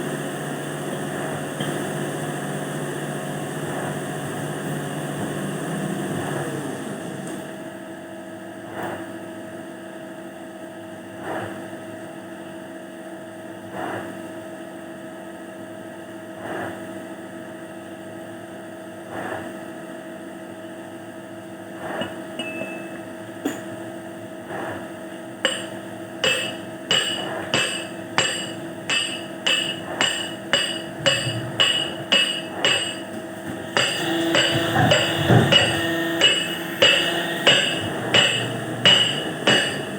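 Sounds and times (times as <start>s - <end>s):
hammer striking metal: 22.0s - 23.6s, 25.5s - 39.9s
steady hum: 25.4s - 39.9s.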